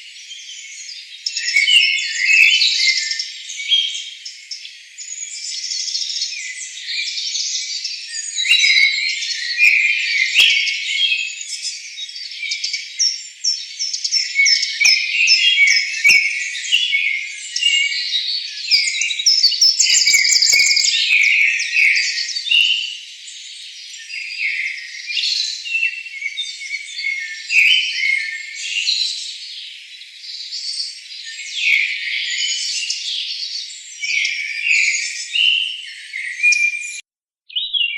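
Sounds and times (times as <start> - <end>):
forest birds chirping: 0.0 - 37.9.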